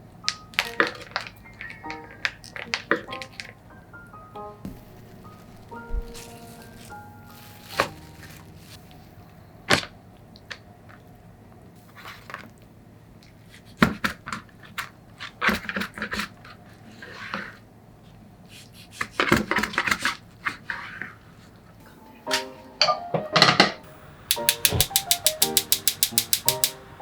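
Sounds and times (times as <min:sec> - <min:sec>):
utensils knocking and clicking: 0:23.9 - 0:26.8.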